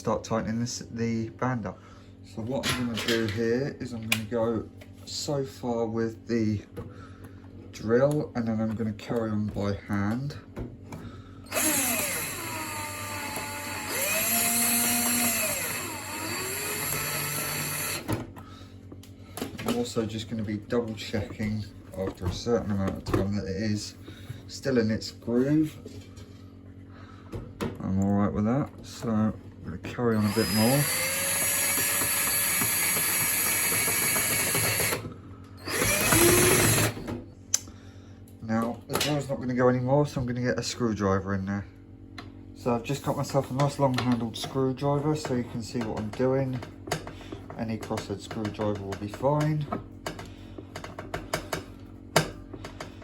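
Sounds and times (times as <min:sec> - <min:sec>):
power drill driving screw: 0:11.5 - 0:18.2, 0:30.1 - 0:37.1.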